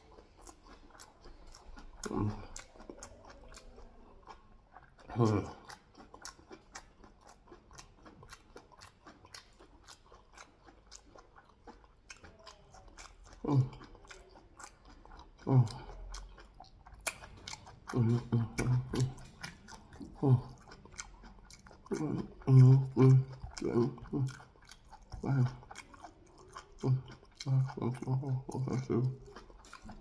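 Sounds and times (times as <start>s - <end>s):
wet chewing mouth clicks: 0.0s - 30.0s.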